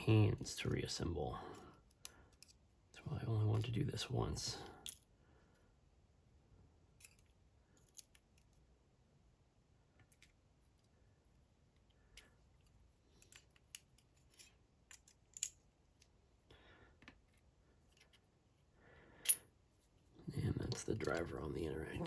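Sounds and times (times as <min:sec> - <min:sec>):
metallic clicks of lock parts: 0:01.5 - 0:02.6, 0:07.0 - 0:08.6, 0:12.0 - 0:16.2.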